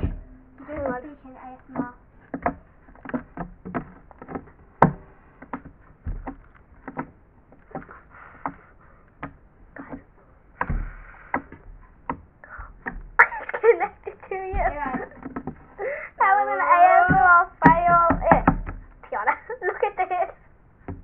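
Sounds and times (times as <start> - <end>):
slime squishing with wet pops: 0.0 - 13.4.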